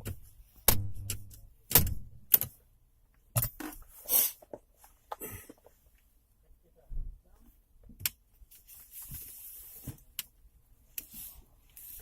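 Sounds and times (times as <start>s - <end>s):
metallic clicks and knocks: 0.0s - 2.6s.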